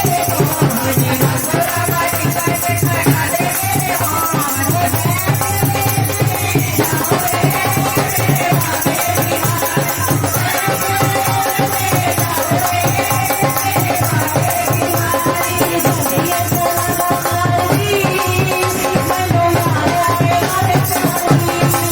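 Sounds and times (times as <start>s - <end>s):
quick drum beat: 0.0s - 21.9s
wavering held melody: 0.2s - 3.1s.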